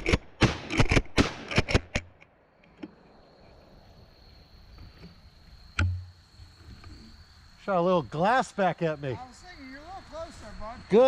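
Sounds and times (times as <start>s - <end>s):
high insect drone: 2.4s - 11.0s.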